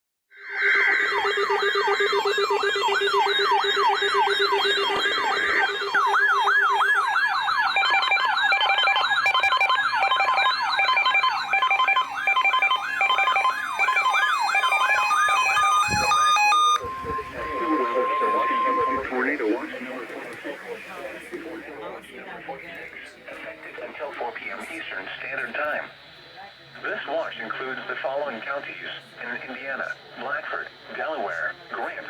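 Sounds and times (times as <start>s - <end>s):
rapid beeping alarm tones: 0.4s - 22.0s
electronic sirens yelping: 0.4s - 22.3s.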